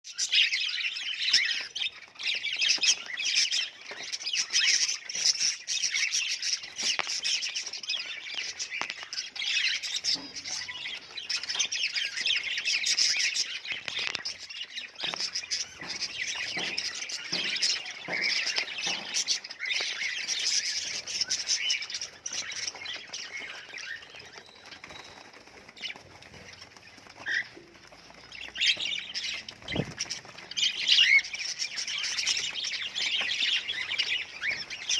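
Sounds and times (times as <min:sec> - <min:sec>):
budgerigars chattering: 0:28.4 - 0:34.9.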